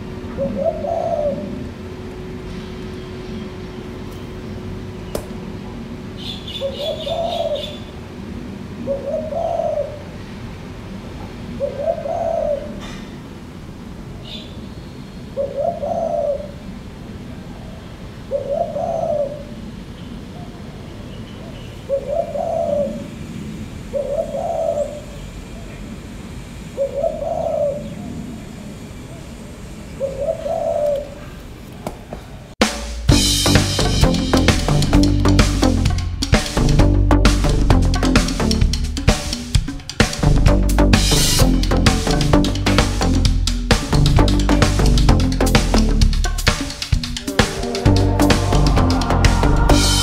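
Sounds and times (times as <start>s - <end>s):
dove cooing: 0.2s - 1.7s, 6.5s - 7.9s, 8.8s - 10.2s, 11.5s - 13.2s, 15.4s - 16.7s, 17.6s - 19.6s, 21.9s - 23.2s, 23.8s - 25.8s, 26.7s - 32.5s.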